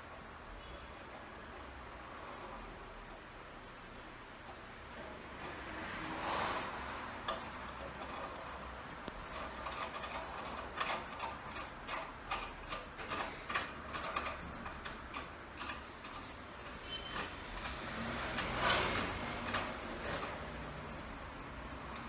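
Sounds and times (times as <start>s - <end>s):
vacuum pump humming: 0.0s - 22.0s
milking machine pulsator clicking: 6.5s - 22.0s.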